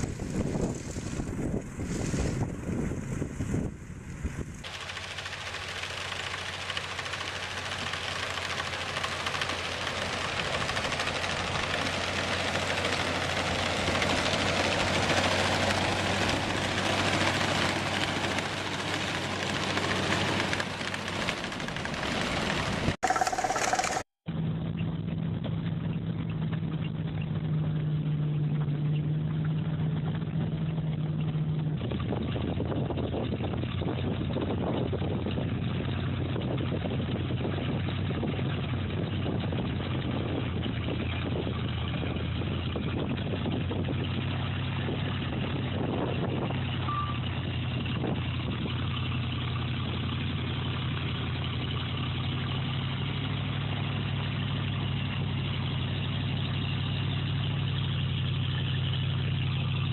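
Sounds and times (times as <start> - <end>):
snow-clearing machine engines: 0.0 - 24.1.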